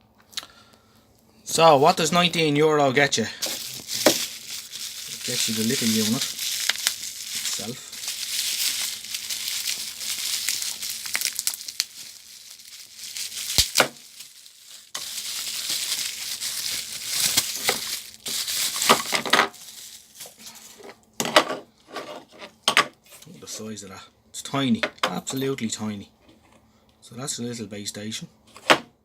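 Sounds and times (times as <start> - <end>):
plastic packaging crinkling: 3.4 - 20.8.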